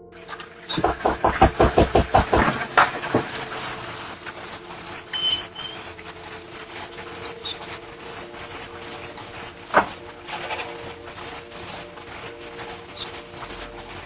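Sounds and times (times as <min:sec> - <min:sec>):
insects chirping: 0:00.0 - 0:14.0.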